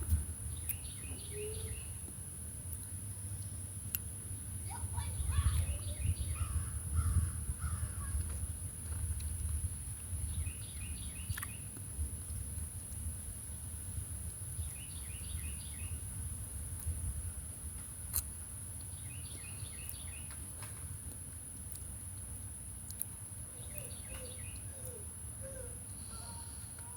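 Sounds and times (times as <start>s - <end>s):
bird chirping: 0.4s - 2.1s, 4.6s - 8.2s, 10.2s - 11.8s, 14.5s - 16.0s, 18.8s - 20.5s, 23.5s - 26.9s.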